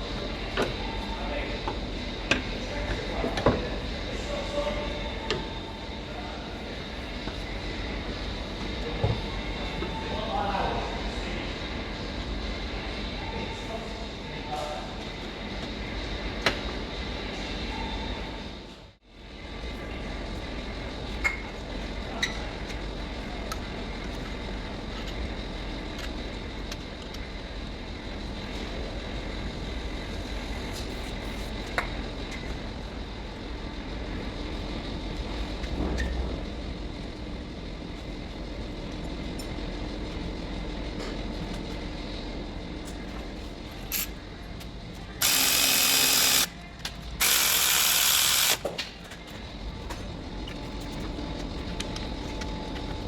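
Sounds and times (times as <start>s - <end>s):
socket wrench ratcheting: 45.2s - 46.5s, 47.2s - 48.7s.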